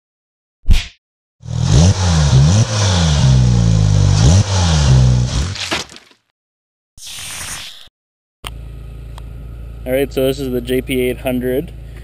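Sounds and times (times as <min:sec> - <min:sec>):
buggy engine revving: 0:01.4 - 0:05.6.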